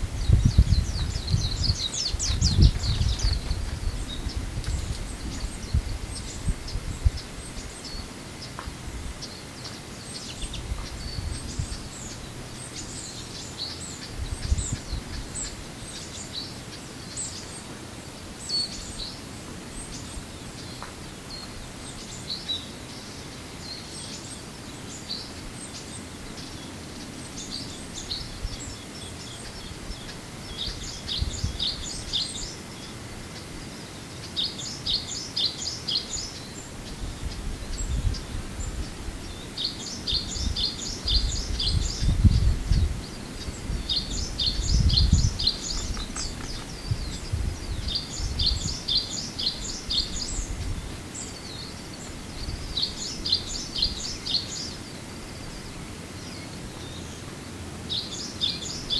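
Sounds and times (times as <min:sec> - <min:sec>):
small bird twittering: 0:19.8 - 0:57.2.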